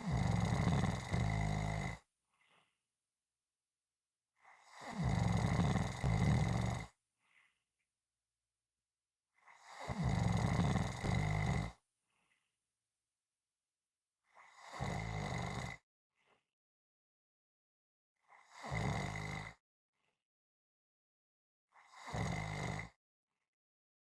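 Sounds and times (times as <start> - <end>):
person snoring loudly: 0.0 - 2.0, 4.6 - 6.9, 9.7 - 11.8, 14.5 - 15.8, 18.5 - 19.6, 21.9 - 23.0.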